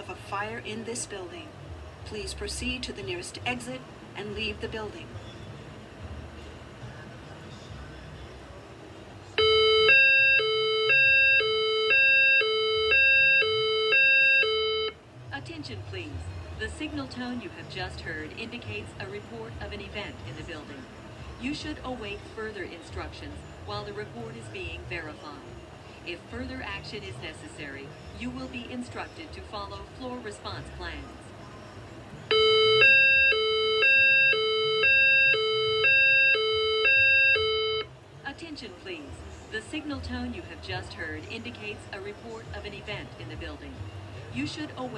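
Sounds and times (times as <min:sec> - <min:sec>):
two-tone hi-lo alarm signal: 0:09.4 - 0:15.0, 0:32.3 - 0:37.9.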